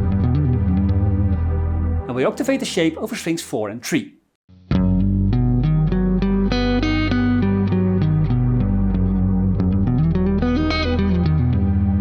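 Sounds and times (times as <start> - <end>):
sustained low bass note: 0.0 - 2.1, 4.8 - 12.0
guitar arpeggio: 4.8 - 12.0.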